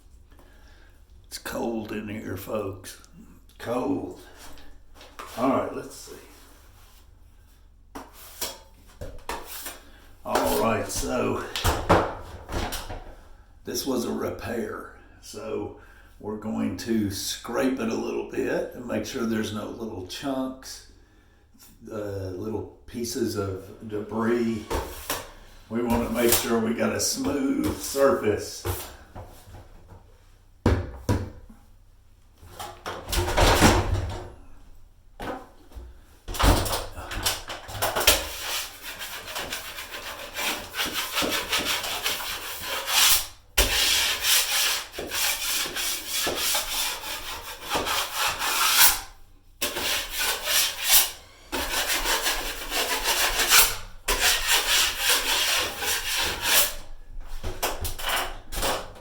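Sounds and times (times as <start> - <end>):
blade scraping drywall: 9.3 - 11.6, 24.1 - 28.8, 36.5 - 59.0.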